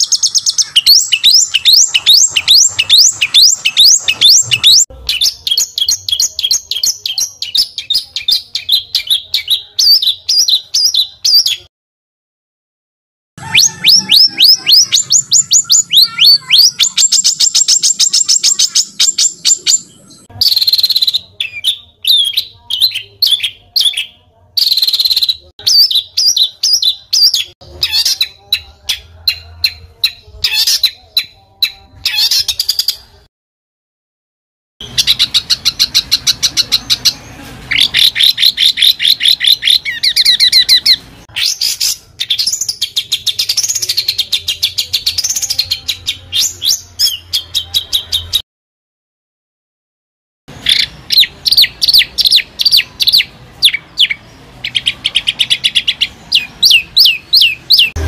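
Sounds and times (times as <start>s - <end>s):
songbird chirps and trills: 0.0s - 11.7s, 13.4s - 33.0s.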